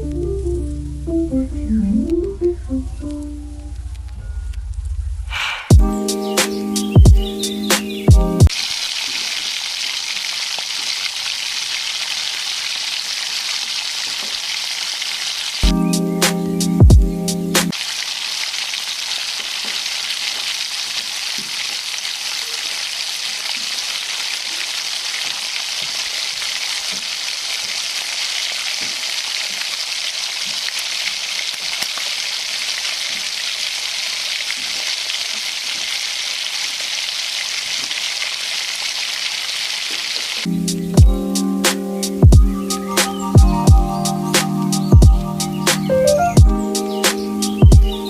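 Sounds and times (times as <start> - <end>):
food sizzling in hot oil: 8.5 - 15.6, 17.3 - 43.4.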